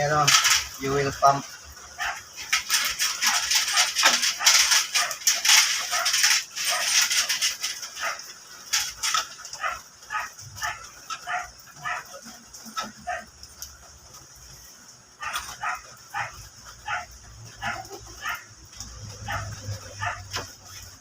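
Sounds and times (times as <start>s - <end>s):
metallic clinks of engine parts: 0.0s - 13.8s
dog barking and yipping: 1.9s - 8.4s, 9.1s - 13.3s, 15.1s - 21.0s.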